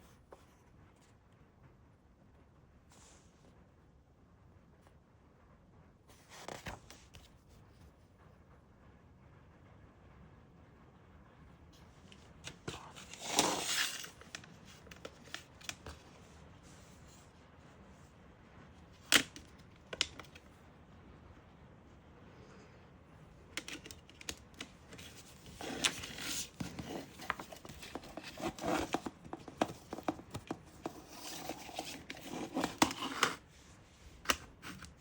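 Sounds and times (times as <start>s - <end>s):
packaging rustling: 12.4s - 16.2s, 23.6s - 33.5s.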